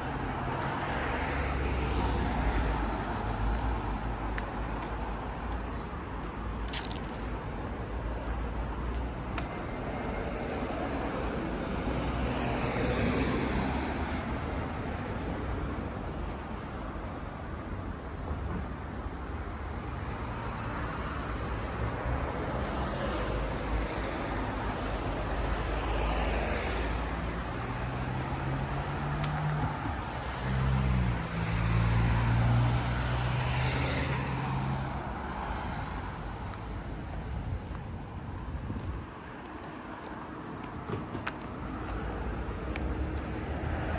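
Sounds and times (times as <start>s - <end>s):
low traffic hum: 0.0s - 43.9s
car passing by: 9.9s - 15.0s, 22.1s - 37.5s.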